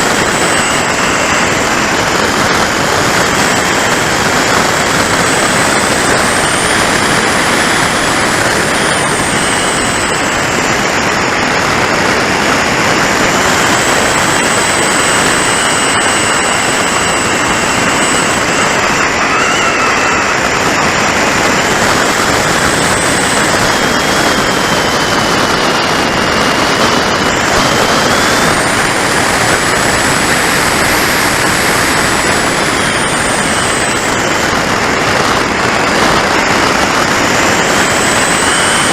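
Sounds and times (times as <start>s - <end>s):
high whine: 0.0s - 38.9s
wind rushing over camera: 0.0s - 38.9s.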